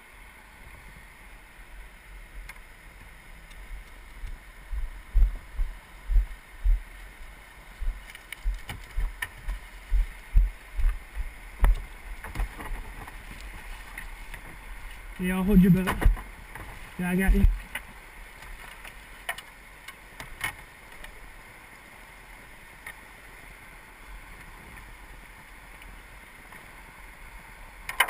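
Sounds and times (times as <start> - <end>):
river water moving: 0.0 - 28.0
wind buffeting microphone: 4.2 - 6.9, 7.8 - 13.6
low rumbling thumps: 4.7 - 6.9, 7.8 - 12.5, 17.1 - 17.6.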